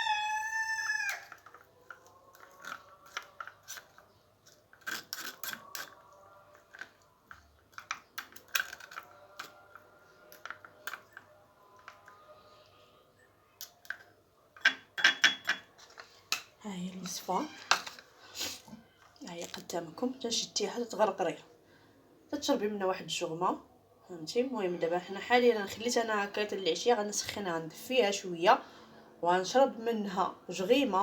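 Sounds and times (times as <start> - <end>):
rooster crowing: 0.0 - 1.5.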